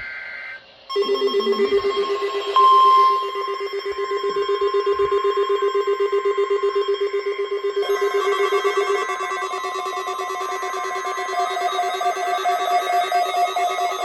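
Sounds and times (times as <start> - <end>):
pulsing alert tone: 0.9 - 3.9
steady high alert tone: 0.9 - 4.3.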